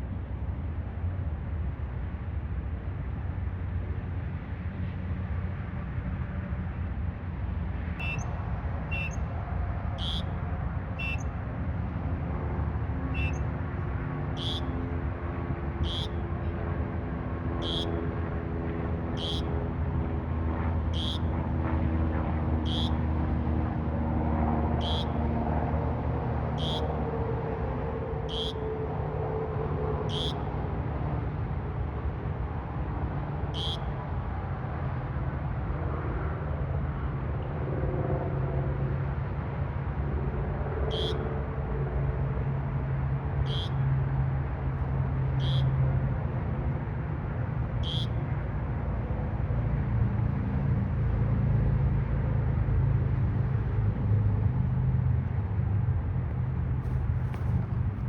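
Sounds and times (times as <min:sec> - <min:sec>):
traffic rumble: 0:00.0 - 0:58.0
bird shrill high call: 0:08.0 - 0:08.3, 0:08.9 - 0:09.2, 0:11.0 - 0:11.3, 0:13.2 - 0:13.4.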